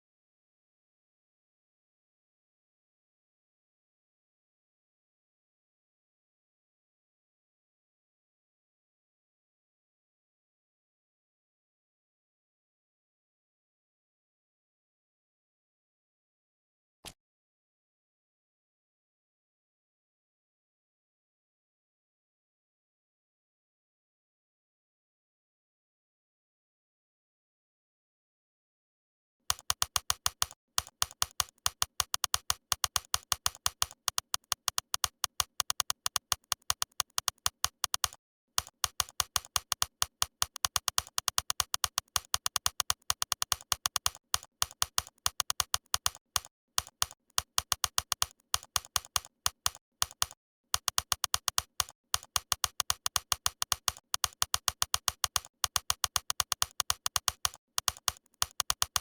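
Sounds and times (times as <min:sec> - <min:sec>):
rapid sharp clicks: 0:29.5 - 0:59.0.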